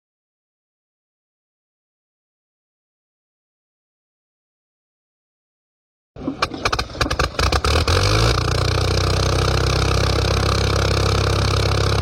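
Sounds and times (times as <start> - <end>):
aircraft engine starting and running: 6.2 - 12.0.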